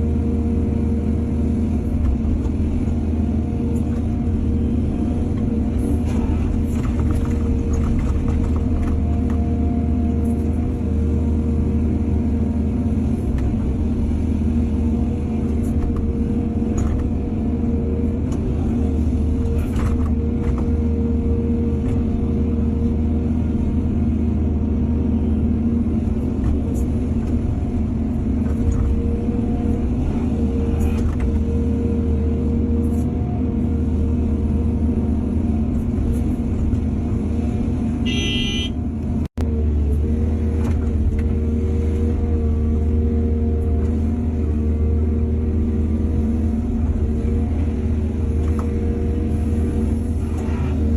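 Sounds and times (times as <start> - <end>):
diesel engine running under load: 0.0 - 50.9.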